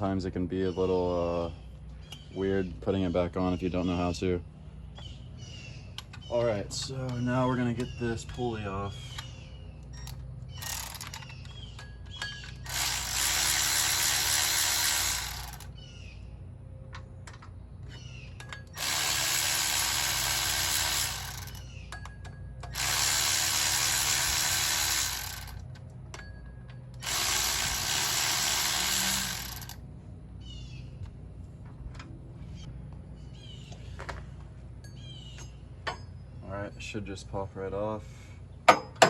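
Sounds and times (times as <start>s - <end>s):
cordless power driver running: 10.6s - 11.3s, 12.6s - 15.8s, 18.7s - 21.7s, 22.7s - 25.7s, 27.0s - 29.8s.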